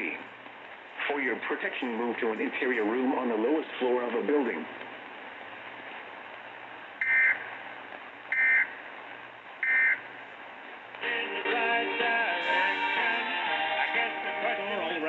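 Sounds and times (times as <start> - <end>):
radio hiss: 0.0 - 15.0
music: 11.0 - 15.0.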